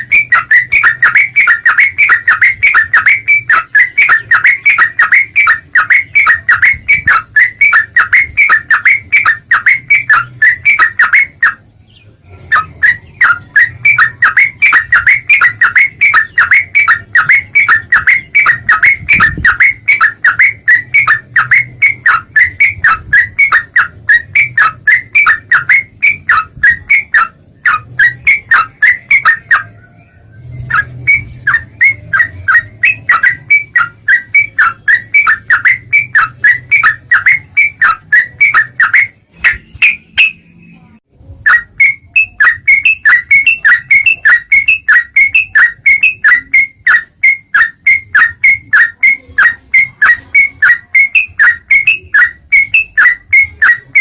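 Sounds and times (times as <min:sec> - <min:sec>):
bird chattering call: 0:00.0 - 0:11.7, 0:12.3 - 0:40.6, 0:41.5 - 0:54.0.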